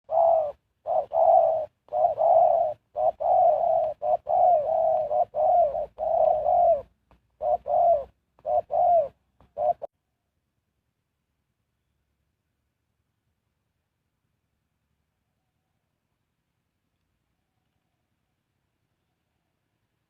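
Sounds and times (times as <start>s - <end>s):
dove cooing: 0.0s - 9.9s.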